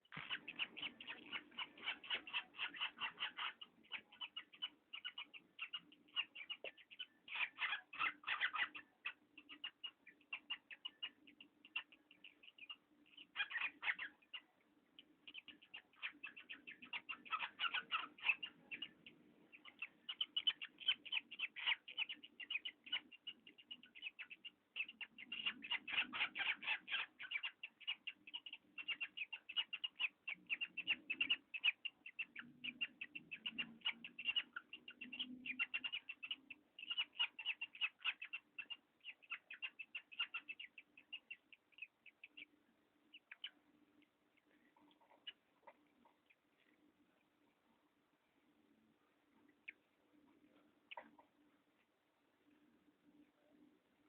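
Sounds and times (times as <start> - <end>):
parrot creaking: 0.1 - 14.5, 15.3 - 42.5.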